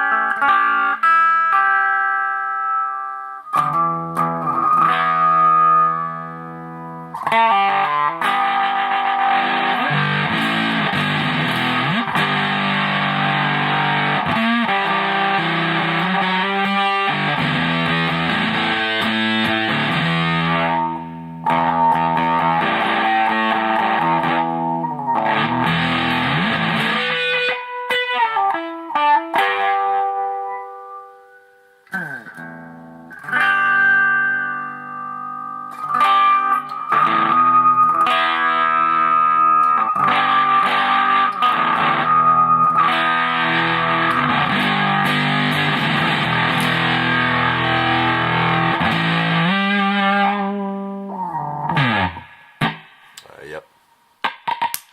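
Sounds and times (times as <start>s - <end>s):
fuzzed electric guitar chords: 0.0s - 53.6s.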